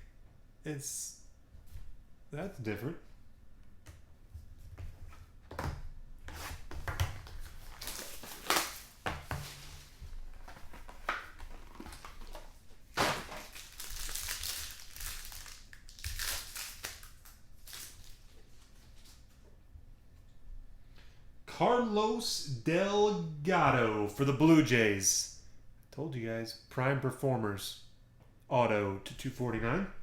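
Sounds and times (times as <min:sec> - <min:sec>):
packaging rustling and crinkling: 0:06.8 - 0:19.3.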